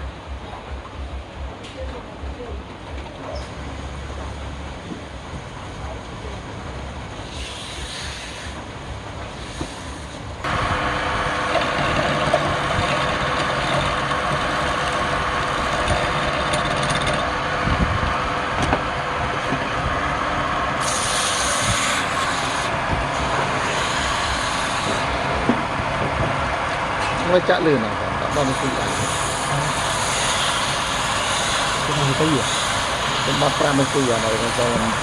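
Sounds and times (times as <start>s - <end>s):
high hissing: 7.2s - 8.6s, 20.7s - 25.1s, 28.3s - 35.0s
woodworking power tool running: 10.4s - 35.0s.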